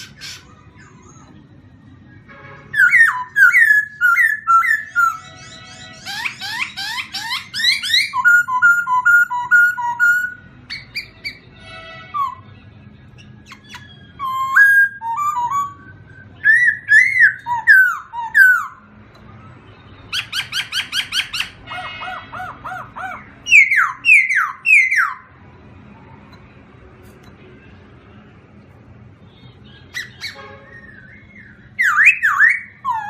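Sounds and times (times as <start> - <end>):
songbirds singing: 0.0 - 33.0.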